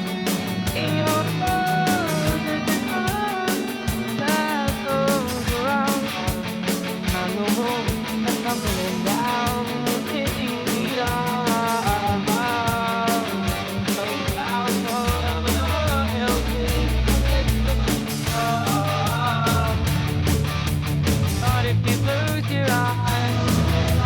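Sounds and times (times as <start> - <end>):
fast drum beat: 0.0 - 24.0
heavy bass: 0.0 - 24.0
rock music with guitar: 0.0 - 24.0.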